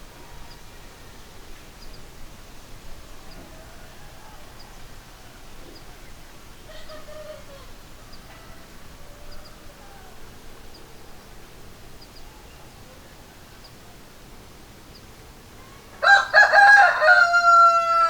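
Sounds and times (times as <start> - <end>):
steady background hiss: 0.0 - 18.0
chickens calling: 3.2 - 10.8, 15.8 - 18.0.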